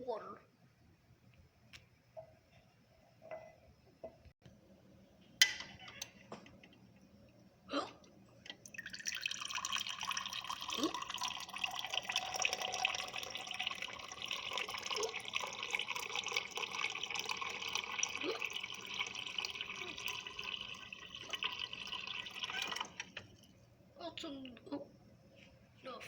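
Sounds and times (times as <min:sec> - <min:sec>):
water running from a tap: 0:08.6 - 0:23.4.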